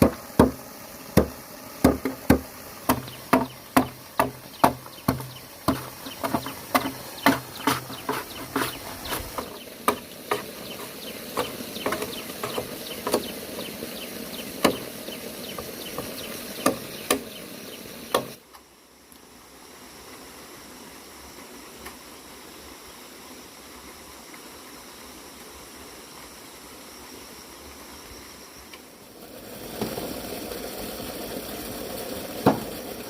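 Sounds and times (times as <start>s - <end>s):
hand tool knocking on wood: 0.0s - 0.6s, 1.2s - 13.3s, 14.6s - 14.9s, 15.5s - 17.3s
faint steady hiss: 0.0s - 33.0s.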